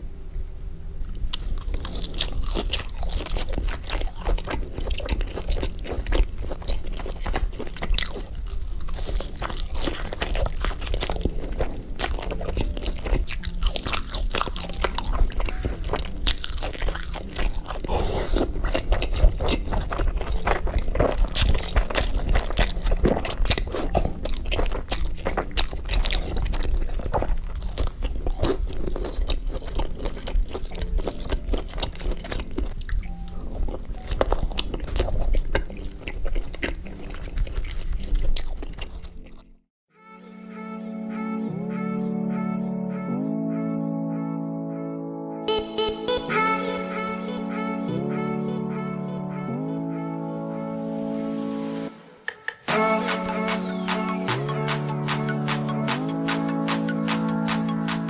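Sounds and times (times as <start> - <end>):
crunching and chewing: 1.0 - 39.7.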